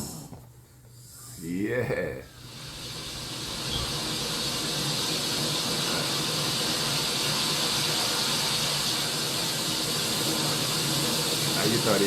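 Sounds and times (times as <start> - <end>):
steady hiss: 0.0 - 12.0.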